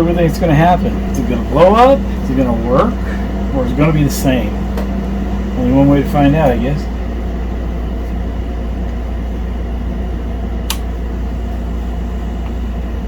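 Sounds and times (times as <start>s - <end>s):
low mechanical hum: 0.0s - 13.0s
sharp click: 10.6s - 10.9s.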